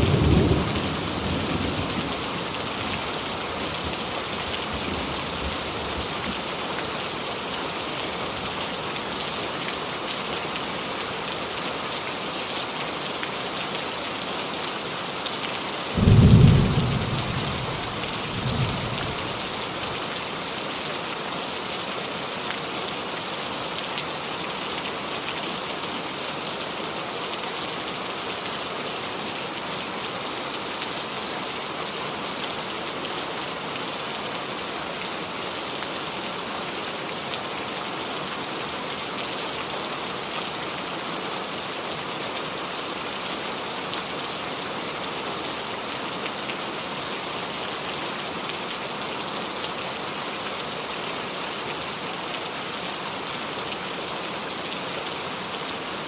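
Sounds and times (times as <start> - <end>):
rain on a roof: 0.0 - 56.0
thunder rumble: 16.0 - 19.0.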